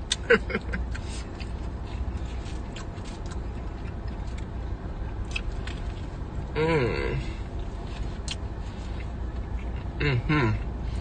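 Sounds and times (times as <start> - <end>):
chewing and biting pizza: 0.0 - 6.5, 7.5 - 9.9.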